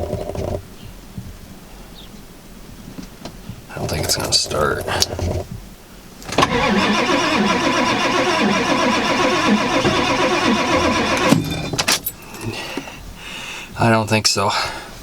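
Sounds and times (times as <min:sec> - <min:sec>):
diesel engine cranking: 0:06.2 - 0:12.9.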